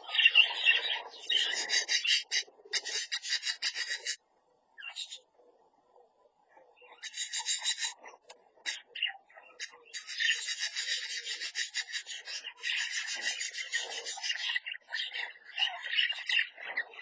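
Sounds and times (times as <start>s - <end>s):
budgerigars chattering and warbling: 0.0s - 5.3s, 6.0s - 17.0s.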